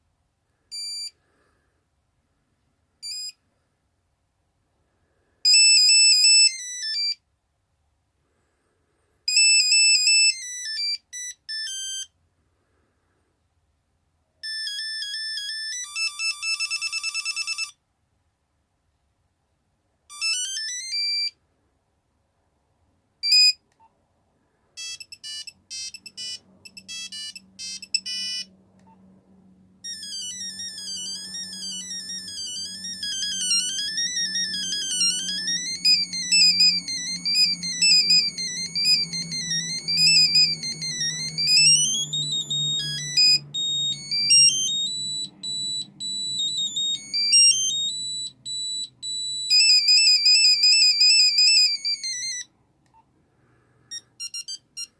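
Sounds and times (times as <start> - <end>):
monophonic phone ringtone beeps: 9.3 - 12.1, 14.4 - 17.7, 20.1 - 21.3, 24.8 - 28.5, 29.8 - 52.5, 53.9 - 54.9
faint low hum: 24.5 - 54.9.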